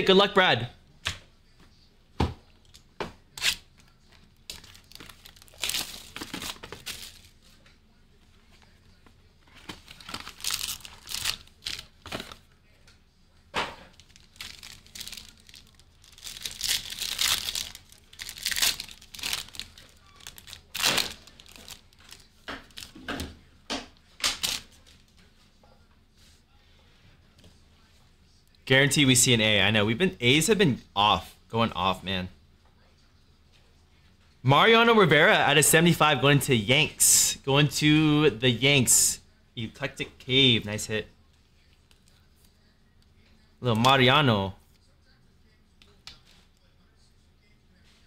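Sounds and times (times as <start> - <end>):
plastic wrapping tearing and crinkling: 4.5 - 7.4, 9.6 - 12.4, 13.9 - 23.0, 24.2 - 24.9.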